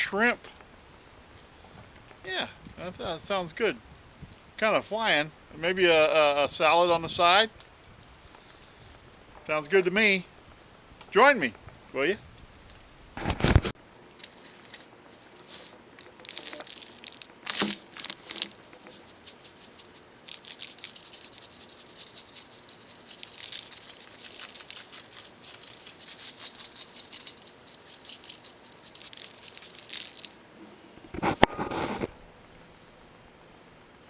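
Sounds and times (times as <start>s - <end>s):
packaging crinkling and tearing: 15.3s - 30.4s.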